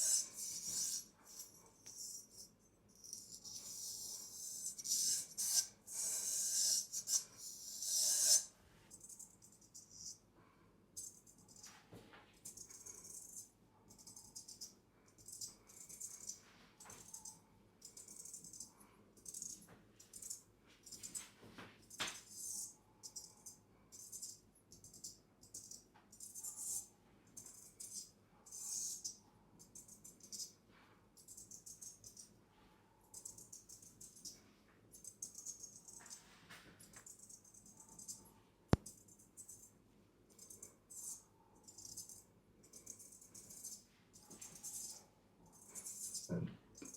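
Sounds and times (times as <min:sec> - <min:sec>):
straight razor scraping: 0:00.0 - 0:02.4, 0:03.2 - 0:08.5.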